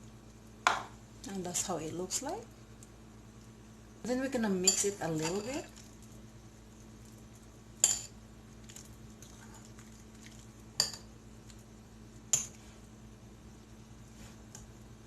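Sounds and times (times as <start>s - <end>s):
spoon stirring bananas in bowl: 4.2s - 5.9s.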